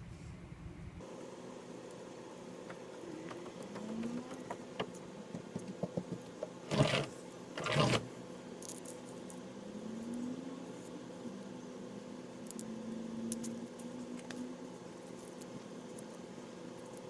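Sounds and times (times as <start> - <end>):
scratchy rasps: 6.6 - 8.1.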